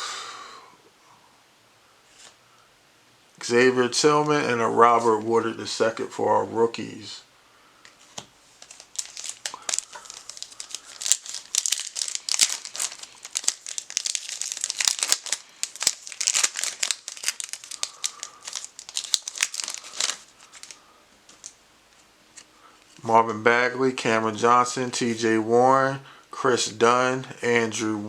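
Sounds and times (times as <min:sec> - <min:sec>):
wrapper tearing and crinkling: 0:08.6 - 0:21.6.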